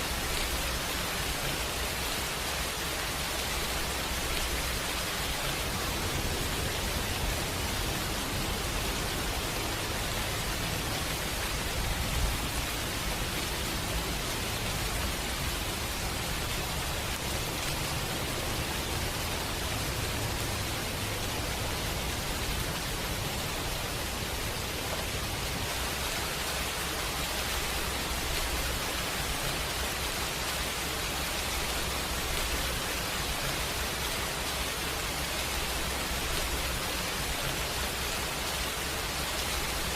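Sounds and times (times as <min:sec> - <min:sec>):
steady rain hiss: 0:00.0 - 0:39.9.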